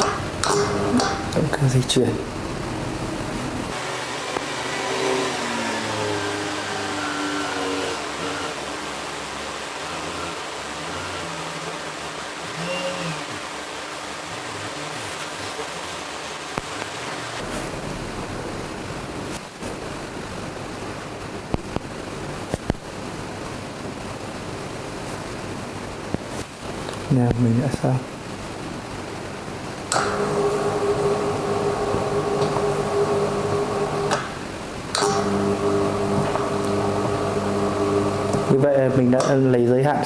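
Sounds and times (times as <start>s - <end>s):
blind motor droning: 2.5s - 14.0s, 29.9s - 39.6s.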